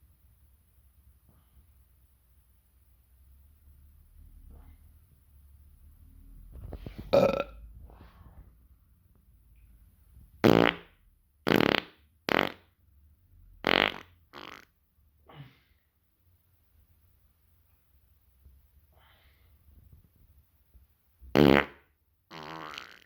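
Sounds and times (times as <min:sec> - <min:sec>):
person farting: 0:06.8 - 0:07.6, 0:10.4 - 0:12.7, 0:13.6 - 0:14.8, 0:21.3 - 0:23.0
person burping: 0:07.1 - 0:07.6.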